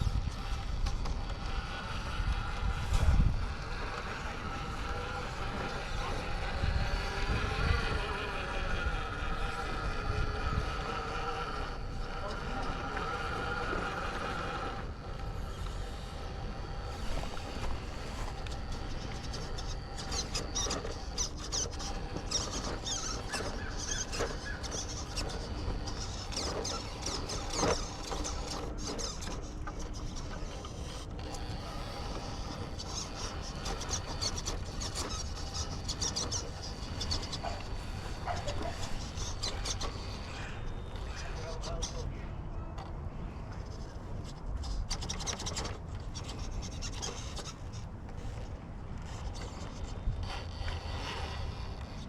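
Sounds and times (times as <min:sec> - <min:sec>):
tires scraping on stone: 0:00.0 - 0:52.0
toy car motor whining: 0:00.0 - 0:52.0.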